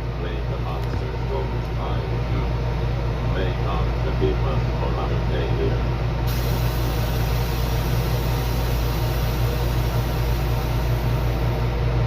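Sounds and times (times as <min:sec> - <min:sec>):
low droning hum: 0:00.0 - 0:12.0
static hiss: 0:06.3 - 0:11.7.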